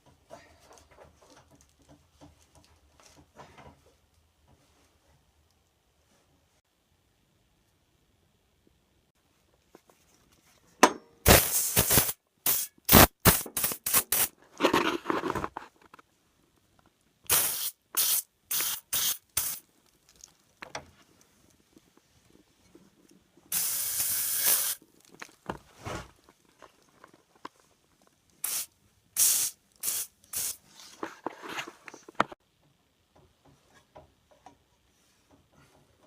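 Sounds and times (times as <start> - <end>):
aerosol spray hissing: 11.3 - 14.3, 17.3 - 19.6, 23.5 - 24.8, 28.4 - 30.6.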